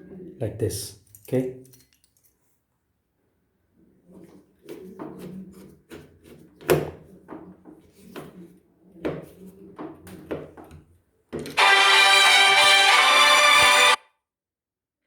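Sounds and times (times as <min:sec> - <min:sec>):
loud music: 0:11.6 - 0:14.0.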